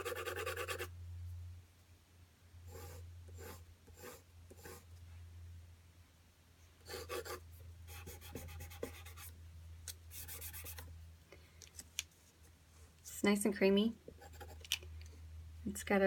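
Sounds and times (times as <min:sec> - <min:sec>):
pencil scribbling on paper: 0:00.0 - 0:00.9, 0:02.7 - 0:04.8, 0:06.9 - 0:09.3, 0:10.1 - 0:10.8, 0:14.2 - 0:14.6
low steady hum: 0:00.0 - 0:16.0.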